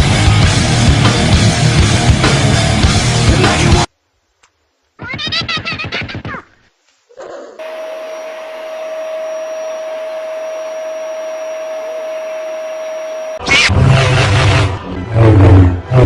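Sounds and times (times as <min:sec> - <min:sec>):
small appliance motor running: 0:07.6 - 0:13.7.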